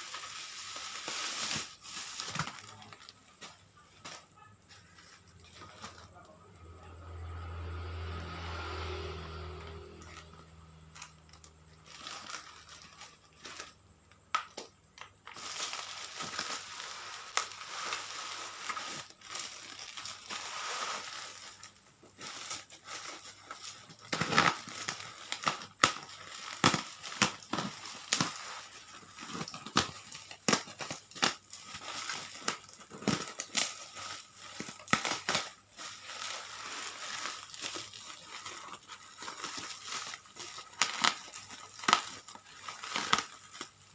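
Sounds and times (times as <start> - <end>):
packaging crinkling and crackling: 0.0 - 6.4, 9.1 - 43.9.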